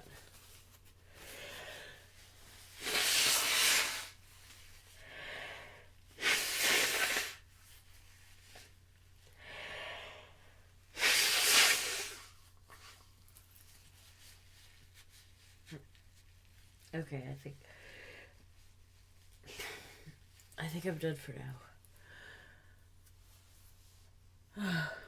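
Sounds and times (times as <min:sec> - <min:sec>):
soft inhale: 0:22.0 - 0:22.9.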